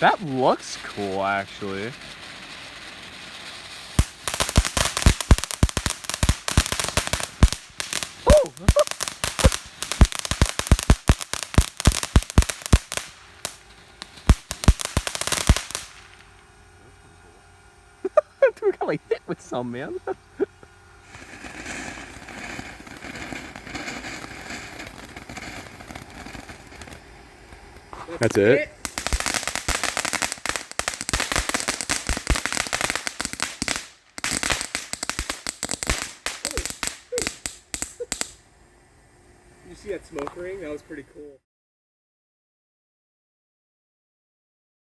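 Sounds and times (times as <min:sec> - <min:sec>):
firework bangs: 0:00.0 - 0:16.6, 0:18.8 - 0:38.4.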